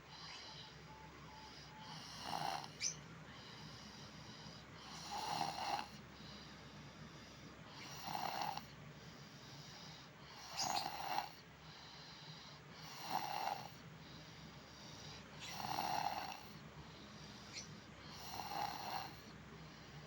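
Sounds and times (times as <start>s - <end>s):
quiet breathing: 0.0s - 20.0s
loud snoring: 1.5s - 2.9s, 3.6s - 6.0s, 7.8s - 8.7s, 9.6s - 11.4s, 12.8s - 13.8s, 15.0s - 16.6s, 17.6s - 19.4s.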